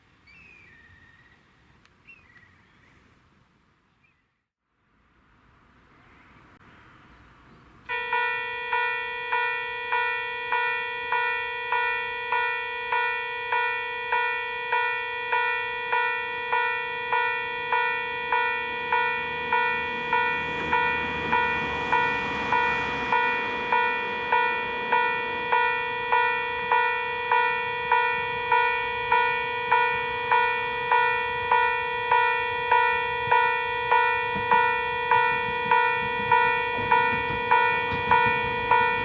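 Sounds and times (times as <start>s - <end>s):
level crossing warning bell: 7.9s - 39.0s
low rumble: 18.1s - 39.0s.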